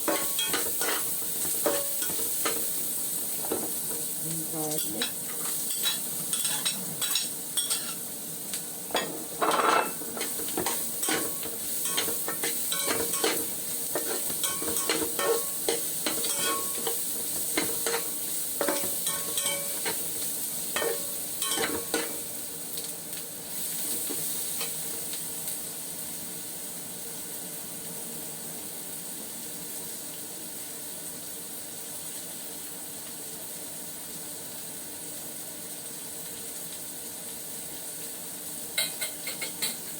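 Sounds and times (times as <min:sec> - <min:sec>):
garlic sizzling in oil: 0:00.0 - 0:39.9
spatula scraping pan: 0:00.1 - 0:02.6, 0:04.8 - 0:08.0, 0:09.0 - 0:20.1.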